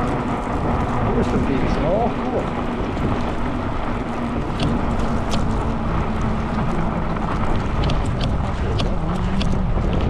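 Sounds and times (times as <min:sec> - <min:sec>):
bicycle tyres pushing through snow: 0:00.0 - 0:10.0
wind noise on microphone: 0:00.0 - 0:10.0.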